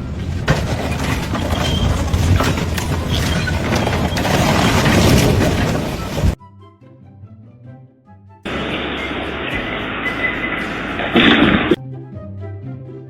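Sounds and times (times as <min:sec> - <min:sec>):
loud machinery clattering: 0:00.0 - 0:06.4, 0:08.5 - 0:11.8.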